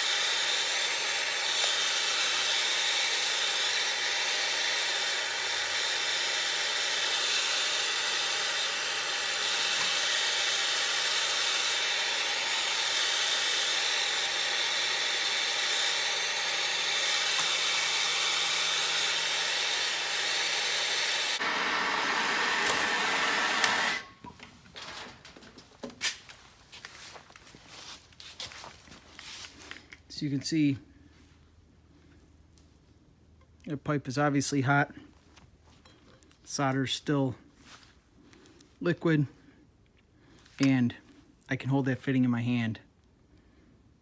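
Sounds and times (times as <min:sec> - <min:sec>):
gas torch hissing: 0:00.0 - 0:24.1.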